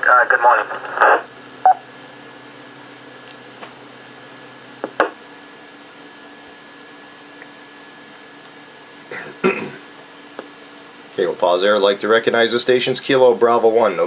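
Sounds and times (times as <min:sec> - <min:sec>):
radio static hiss: 0:00.0 - 0:01.8, 0:04.8 - 0:05.2
faint hum: 0:00.0 - 0:14.0.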